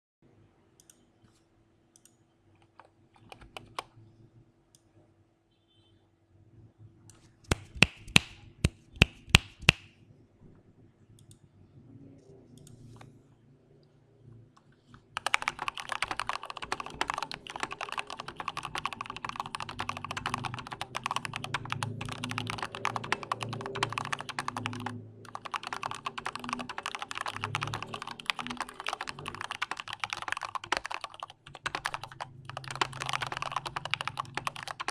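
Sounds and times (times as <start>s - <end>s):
mechanical keyboard typing: 15.2s - 34.9s.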